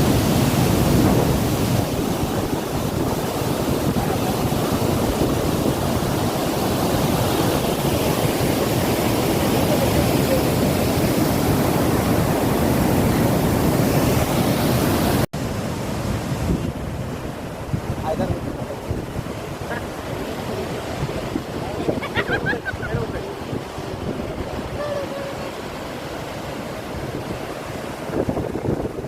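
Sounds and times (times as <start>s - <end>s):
water rushing through dam spillway: 0.0s - 29.0s.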